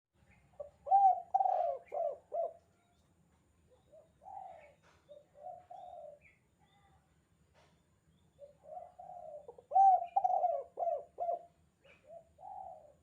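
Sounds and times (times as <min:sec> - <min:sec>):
dove cooing: 0:00.6 - 0:02.9, 0:03.7 - 0:06.4, 0:08.4 - 0:13.0.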